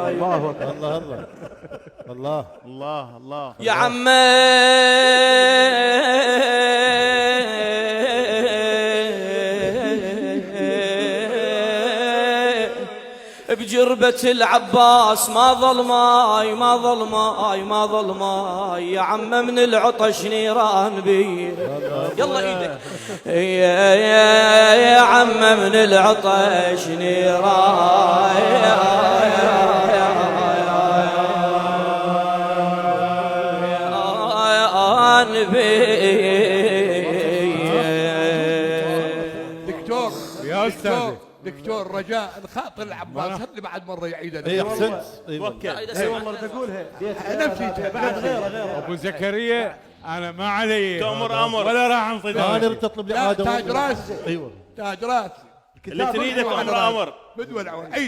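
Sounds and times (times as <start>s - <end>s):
man singing unaccompanied lament: 3.4s - 41.2s.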